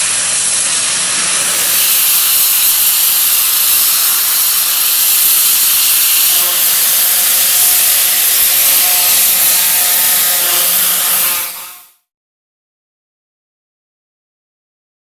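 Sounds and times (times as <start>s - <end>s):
high-pressure water jet hissing: 0.0s - 12.0s.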